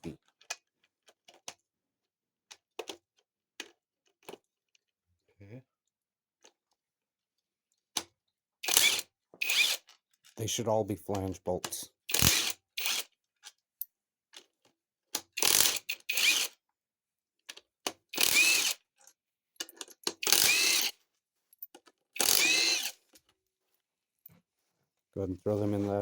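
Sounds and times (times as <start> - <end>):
power tool spinning: 8.6 - 9.8, 12.1 - 13.0, 15.4 - 16.5, 18.1 - 18.8, 20.2 - 21.0, 22.2 - 23.0.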